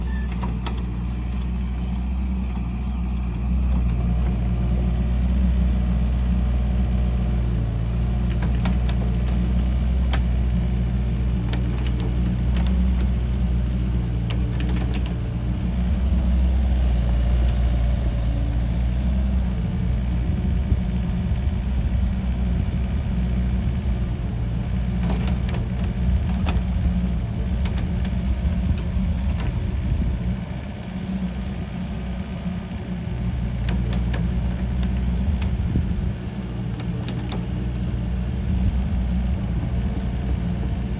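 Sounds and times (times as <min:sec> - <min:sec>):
diesel engine droning: 0:00.0 - 0:40.9.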